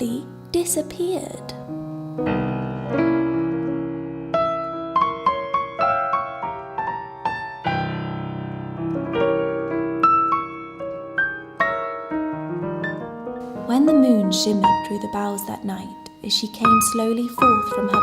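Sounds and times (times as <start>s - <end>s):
solo piano music: 0.0s - 18.0s.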